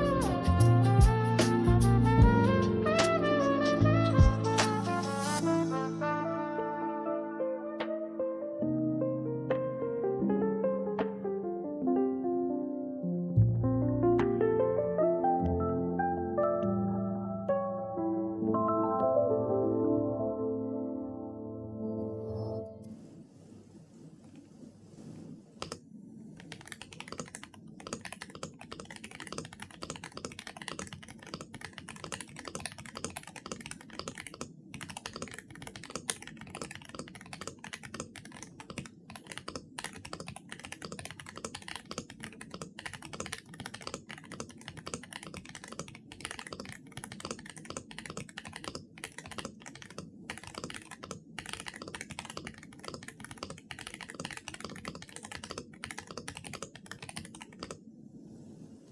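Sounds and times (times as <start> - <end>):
fast mechanical keyboard typing: 25.6 - 25.8, 26.4 - 57.8.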